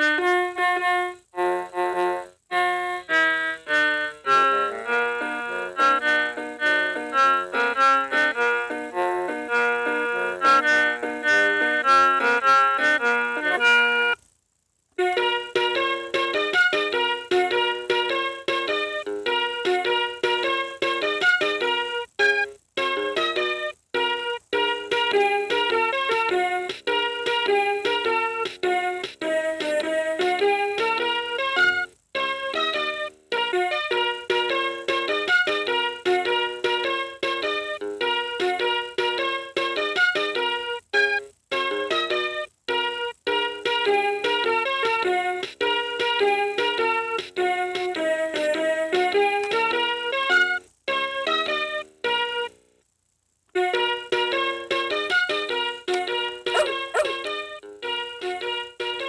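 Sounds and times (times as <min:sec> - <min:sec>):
electronic toy melody: 0:00.0 - 0:14.2.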